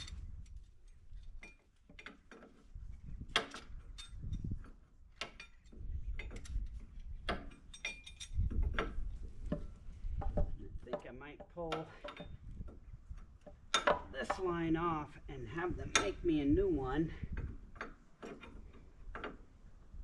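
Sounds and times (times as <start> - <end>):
wrenches clinking on metal fittings: 0.0 - 9.0.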